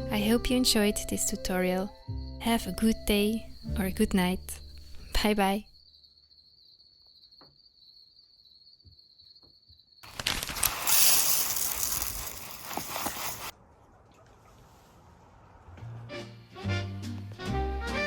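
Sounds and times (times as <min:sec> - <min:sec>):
high-pitched cricket-like trill: 0:05.8 - 0:13.5.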